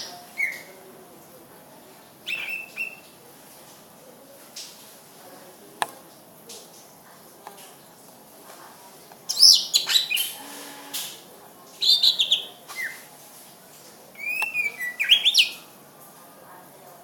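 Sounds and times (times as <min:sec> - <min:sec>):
bird whistling song: 0:02.3 - 0:03.0, 0:09.3 - 0:10.4, 0:14.2 - 0:15.6.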